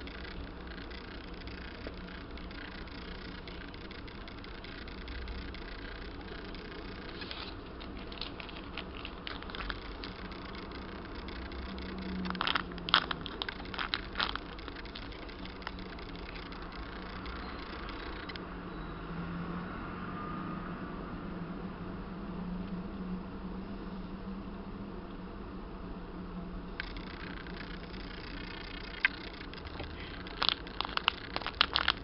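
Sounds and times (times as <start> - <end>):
squishy toy crackling clicks: 0.0 - 18.4, 26.8 - 32.0
steady low hum: 0.0 - 19.6, 20.6 - 32.0.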